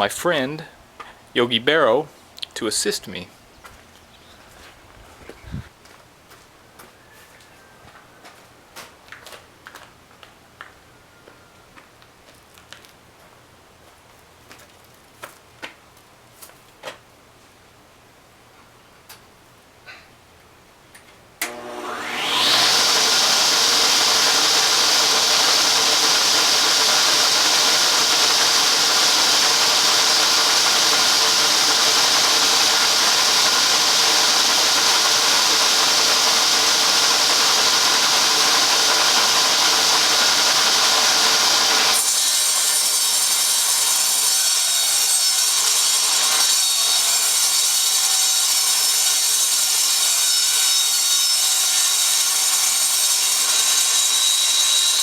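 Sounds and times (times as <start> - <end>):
table saw cutting board: 21.4 - 55.0.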